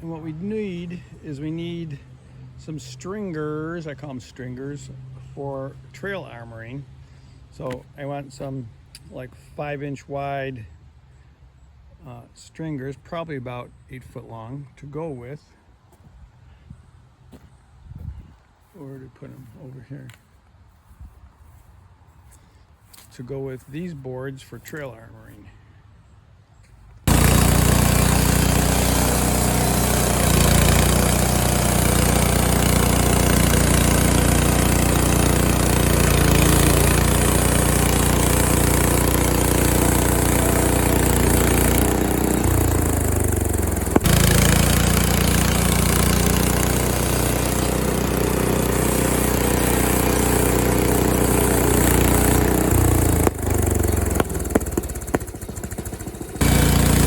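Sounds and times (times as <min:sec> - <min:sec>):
sawmill engine running: 0:00.0 - 0:09.0, 0:27.0 - 0:57.0
blade sawing through log: 0:27.1 - 0:57.0.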